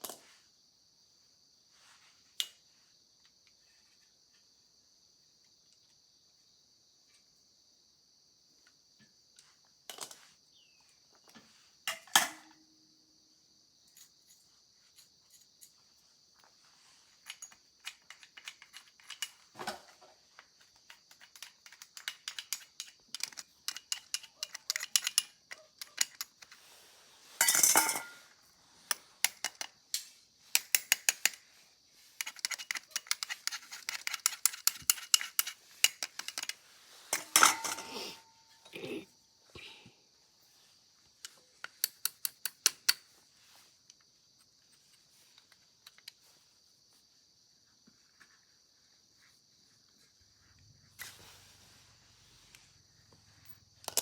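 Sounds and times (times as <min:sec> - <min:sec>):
crickets chirring: 0:00.0 - 0:54.0
metal tools clinking and rattling: 0:11.9 - 0:12.6, 0:17.1 - 0:20.1, 0:20.8 - 0:26.6, 0:27.4 - 0:28.3, 0:32.2 - 0:38.7, 0:53.4 - 0:54.0.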